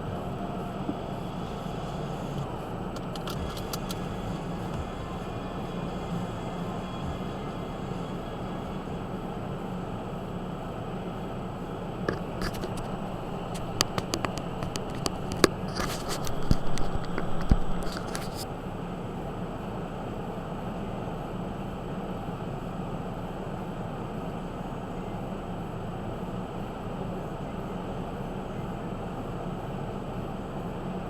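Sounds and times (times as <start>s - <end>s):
vehicle running on road: 0.0s - 18.6s
sharp clicks and taps: 12.1s - 18.4s.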